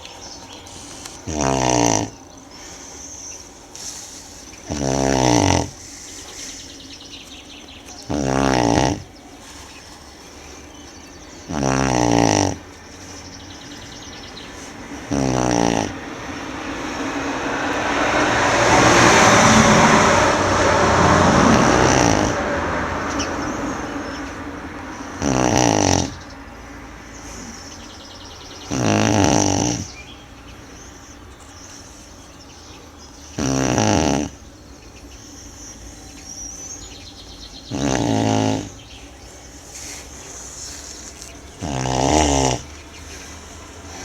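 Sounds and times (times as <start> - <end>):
dog snoring: 0.8 - 2.8, 4.6 - 6.4, 8.0 - 9.6, 10.2 - 13.2, 13.8 - 16.2, 18.7 - 22.4, 25.0 - 26.2, 28.7 - 30.0, 33.4 - 34.4, 37.6 - 38.9, 39.8 - 44.0
broad rushing noise: 12.8 - 25.0.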